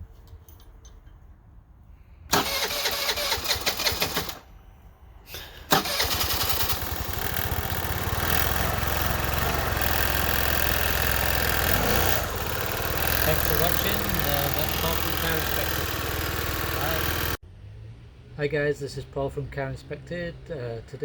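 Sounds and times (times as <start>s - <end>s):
scooter engine starting: 2.3s - 4.5s, 5.7s - 17.4s
scooter engine idling: 5.8s - 17.4s.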